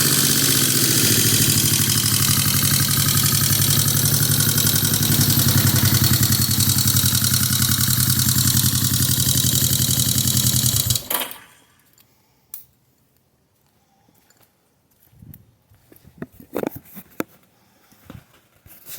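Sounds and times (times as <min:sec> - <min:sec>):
motorcycle engine running: 0:00.0 - 0:11.6.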